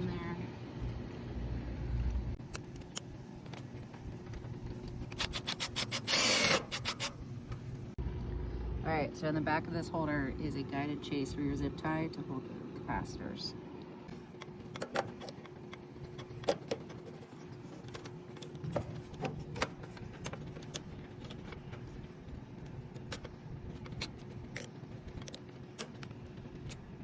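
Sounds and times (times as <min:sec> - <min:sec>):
steady low hum: 0:00.0 - 0:27.0
clicks and rattles of handling parts: 0:14.4 - 0:27.0.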